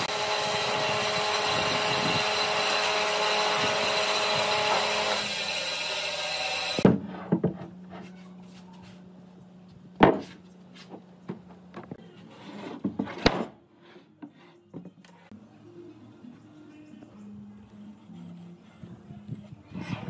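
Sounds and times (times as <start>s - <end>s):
power tool running: 0.0s - 6.9s
wooden knocks and clunks: 6.8s - 7.7s, 10.0s - 12.0s.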